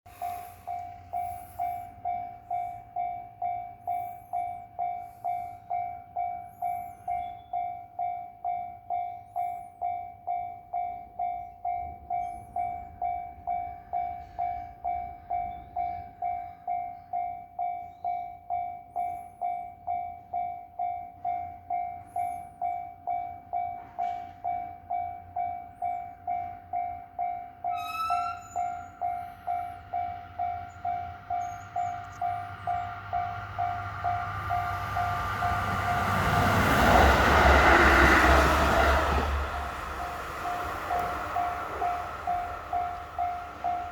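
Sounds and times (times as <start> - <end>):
level crossing alarm ringing: 0.1 - 43.9
low rumble of train: 0.1 - 43.9.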